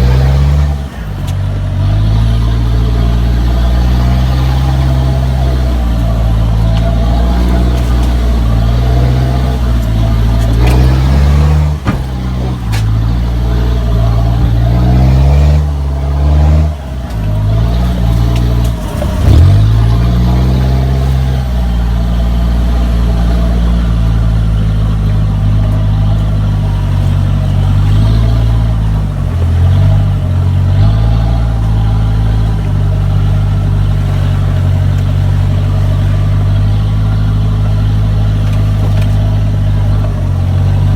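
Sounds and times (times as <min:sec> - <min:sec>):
suv engine off-road: 0:00.0 - 0:40.9.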